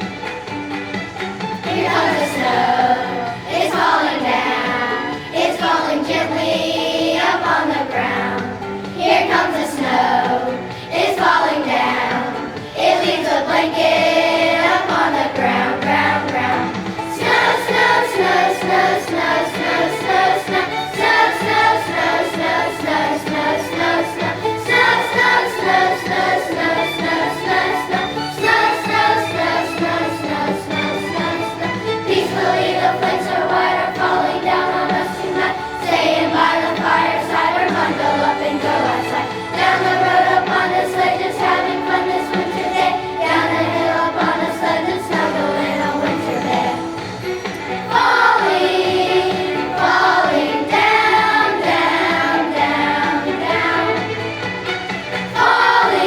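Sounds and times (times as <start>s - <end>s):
choir singing with instruments: 0.0s - 56.0s.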